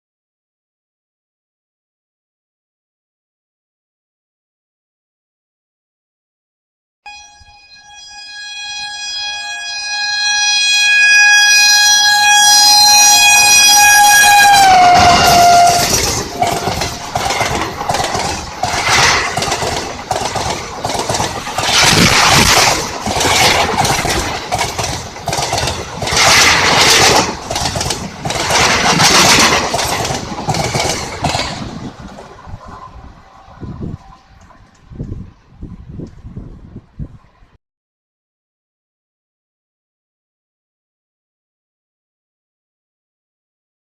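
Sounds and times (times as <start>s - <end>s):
locomotive horn blast: 7.1s - 17.2s
train coaches clattering over rails: 14.2s - 35.2s.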